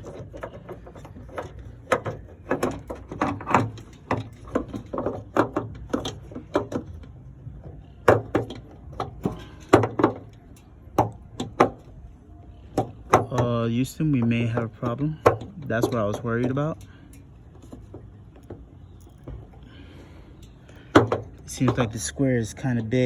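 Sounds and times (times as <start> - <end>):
hard knocks and clicks: 0.0 - 11.9, 20.9 - 21.9.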